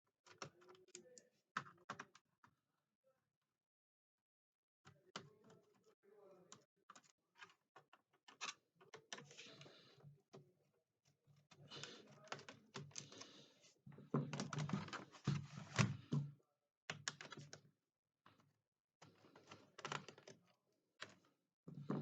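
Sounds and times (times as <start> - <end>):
screwdriver and screws clicking on plastic: 0.2 - 2.3, 6.5 - 9.6, 18.3 - 20.4.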